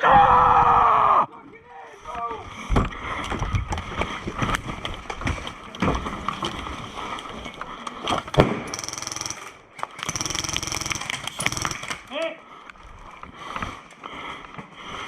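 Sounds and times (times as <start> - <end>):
knocks and scuffling: 2.5 - 8.6
airsoft gun rapid fire: 8.4 - 12.2.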